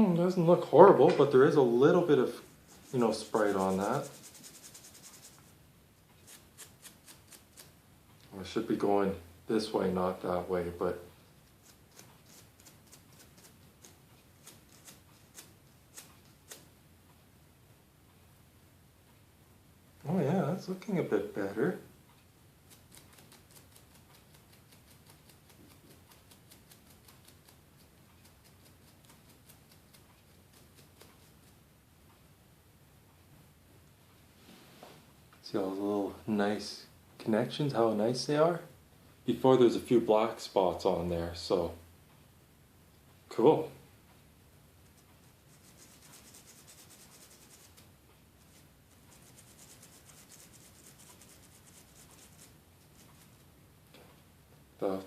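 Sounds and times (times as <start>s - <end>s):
faint quick scrubbing: 1.3s - 5.6s, 34.3s - 35.1s.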